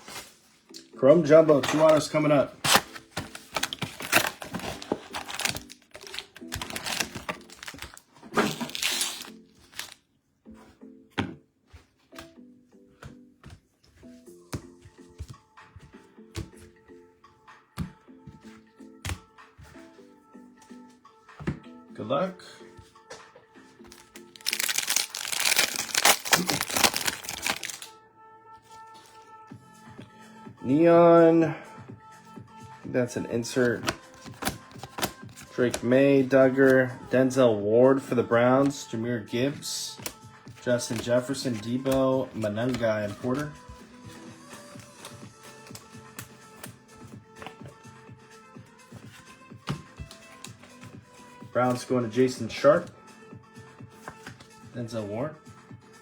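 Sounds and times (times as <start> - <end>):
faint background music: 0.0 - 56.0
foil wrapper tearing and crinkling: 2.7 - 10.0, 23.9 - 27.9, 34.1 - 35.4.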